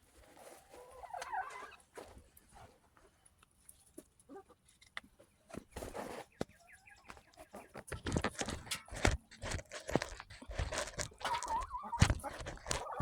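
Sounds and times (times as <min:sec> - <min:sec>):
hens pecking with sharp taps: 0:00.6 - 0:13.0
hens clucking: 0:00.8 - 0:01.8, 0:10.1 - 0:13.0.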